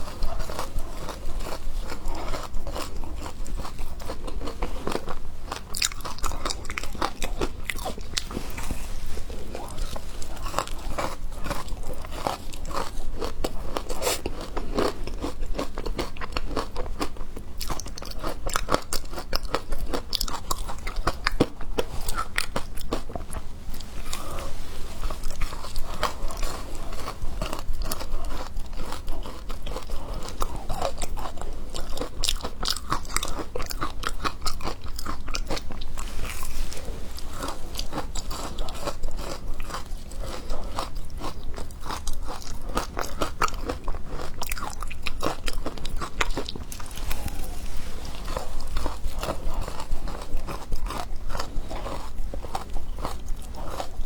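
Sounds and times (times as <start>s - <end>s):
person crunching frozen ice: 32.0s - 54.0s.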